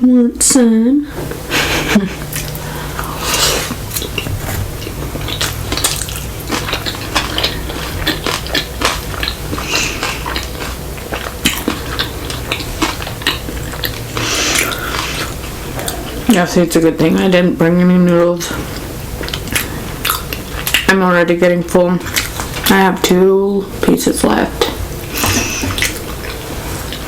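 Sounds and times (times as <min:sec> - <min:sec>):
steady low hum: 0:00.0 - 0:27.0
chewing and biting: 0:02.2 - 0:16.4, 0:18.7 - 0:20.9, 0:22.0 - 0:22.7, 0:24.6 - 0:27.0.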